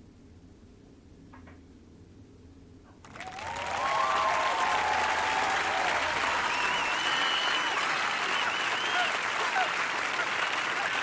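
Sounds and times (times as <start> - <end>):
crowd applauding and cheering: 3.0 - 11.0.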